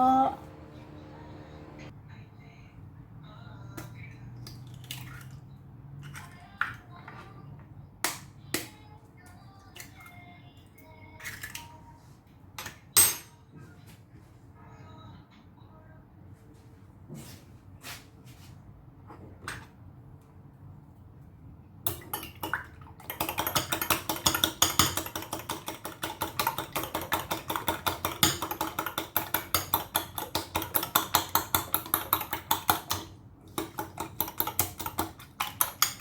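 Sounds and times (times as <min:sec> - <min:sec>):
whisk beating eggs in bowl: 0:22.1 - 0:36.0.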